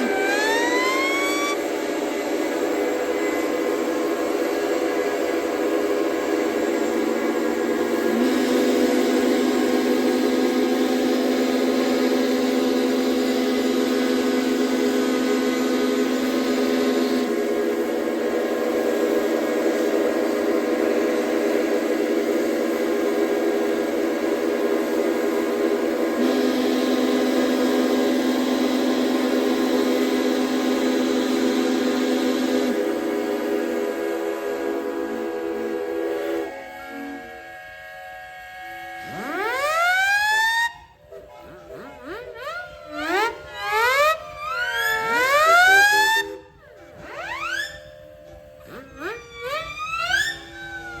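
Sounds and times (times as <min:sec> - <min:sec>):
siren-like upward swoops: 0:00.0 - 0:01.7, 0:41.8 - 0:47.9, 0:48.6 - 0:51.0
steam whistles blowing: 0:00.0 - 0:51.0.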